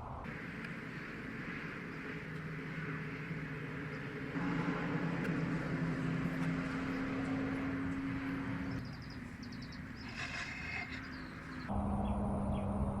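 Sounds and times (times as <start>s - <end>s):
engine humming: 0.0s - 13.0s
bird chirping: 6.7s - 12.7s.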